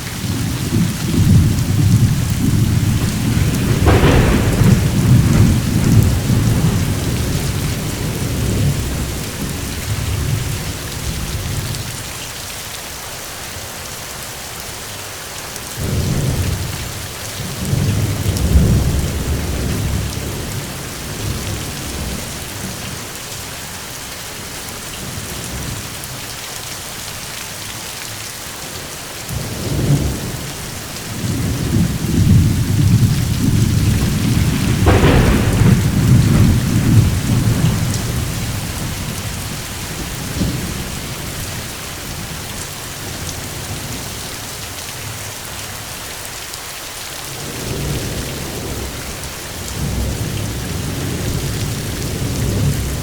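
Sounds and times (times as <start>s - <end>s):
steady rain: 0.0s - 53.0s
rolling thunder: 0.1s - 12.0s, 15.8s - 23.1s, 29.3s - 44.2s, 47.4s - 53.0s.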